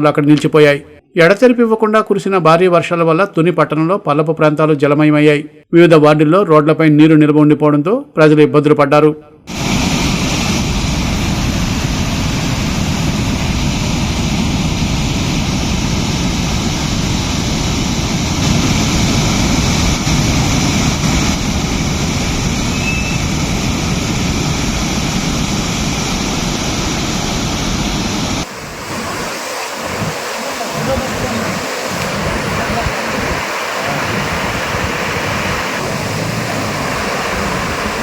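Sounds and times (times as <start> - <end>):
river torrent rushing: 9.5 - 38.0.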